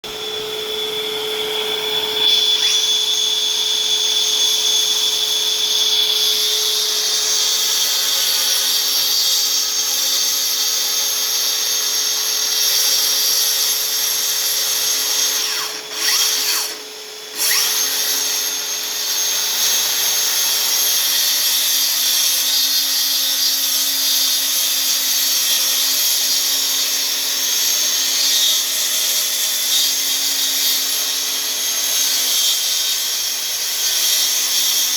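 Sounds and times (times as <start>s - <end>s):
plunge saw running: 0.1s - 34.9s.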